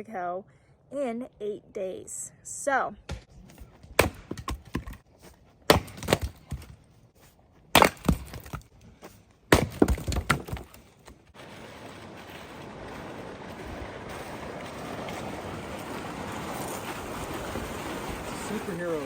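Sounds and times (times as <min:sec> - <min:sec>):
axe striking firewood: 0:03.1 - 0:05.0, 0:05.7 - 0:06.8, 0:07.7 - 0:08.7, 0:09.5 - 0:11.2
wood pieces knocking and clattering: 0:09.6 - 0:11.2.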